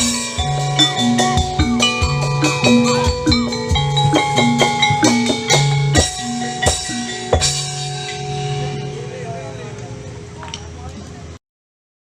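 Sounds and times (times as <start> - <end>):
instrumental music with drum beat: 0.0 - 9.4.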